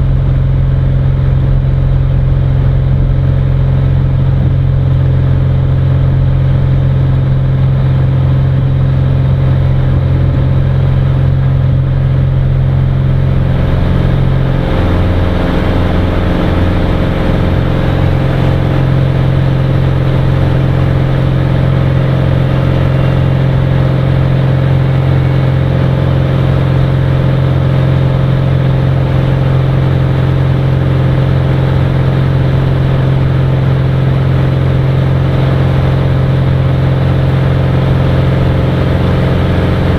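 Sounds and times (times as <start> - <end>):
aircraft engine and propeller running: 0.0 - 39.9.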